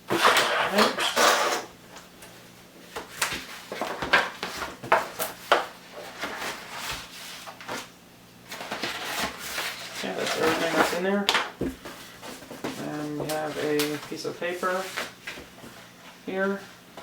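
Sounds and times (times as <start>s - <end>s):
paper and plastic crinkling: 2.9s - 7.9s, 8.5s - 11.0s.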